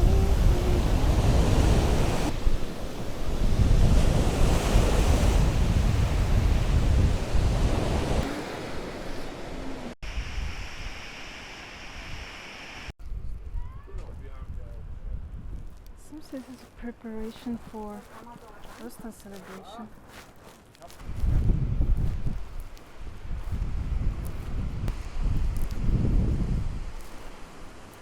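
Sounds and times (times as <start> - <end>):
wind buffeting microphone: 0.0 - 8.9, 13.0 - 18.0, 21.0 - 27.9
surf washing on shore: 0.0 - 12.9, 22.0 - 28.0.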